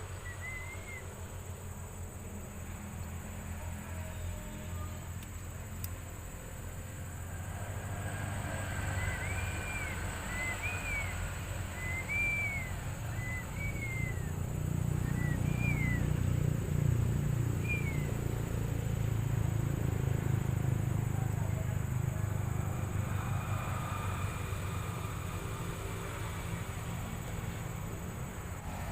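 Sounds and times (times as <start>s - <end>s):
bird whistling calls: 0.1s - 1.2s, 8.8s - 16.3s, 17.5s - 18.2s
faint high-pitched tone: 3.4s - 5.2s.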